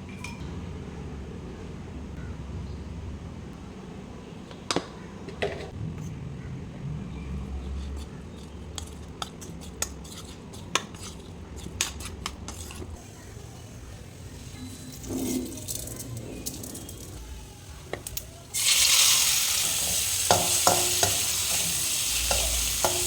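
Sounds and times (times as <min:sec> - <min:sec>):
metal utensil clinking on pan: 0:19.9 - 0:23.0.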